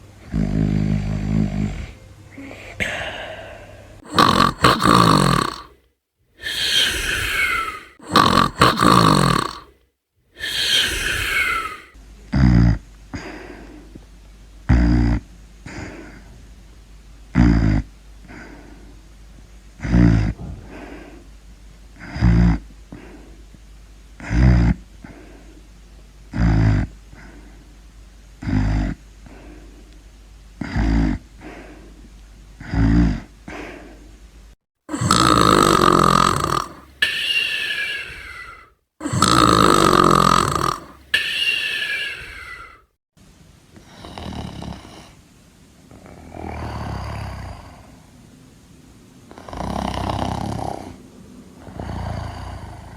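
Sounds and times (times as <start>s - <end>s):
rhythmic snoring: 0.0s - 2.1s, 2.8s - 5.8s, 6.4s - 9.8s, 10.4s - 16.5s, 17.3s - 19.0s, 19.8s - 21.2s, 22.0s - 23.4s, 24.2s - 25.6s, 26.3s - 27.6s, 28.4s - 29.7s, 30.6s - 32.0s, 32.6s - 33.8s, 34.9s - 42.9s, 43.8s - 45.2s, 45.9s - 48.1s, 49.3s - 52.9s
loud snores with falling whistle: 0.3s - 2.0s, 4.1s - 5.7s, 6.4s - 9.7s, 10.4s - 12.8s, 34.9s - 42.8s.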